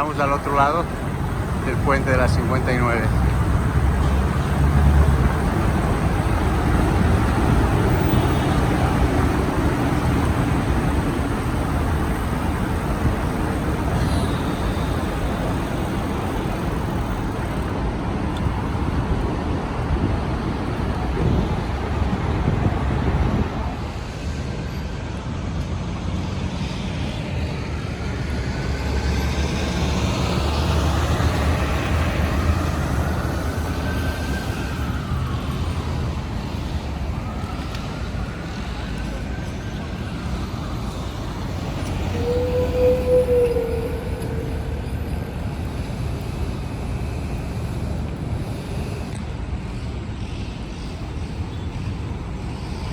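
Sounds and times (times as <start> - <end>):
city traffic rumble: 0.0 - 52.9
wavering rising and falling tone: 39.8 - 45.8.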